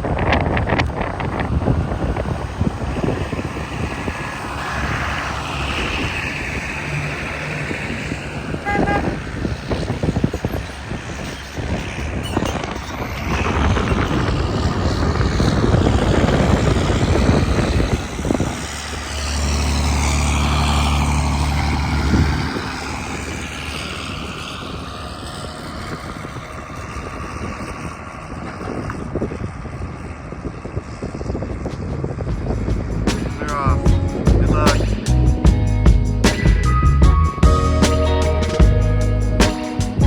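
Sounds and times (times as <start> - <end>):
rushing noise: 0.0 - 27.9, 32.2 - 40.0
car engine revving hard: 1.5 - 11.2.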